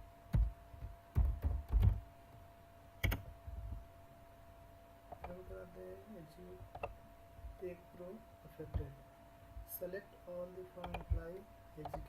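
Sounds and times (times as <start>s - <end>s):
faint steady hum: 0.0s - 12.0s
computer keyboard typing: 0.3s - 2.0s, 3.0s - 3.2s, 10.8s - 12.0s.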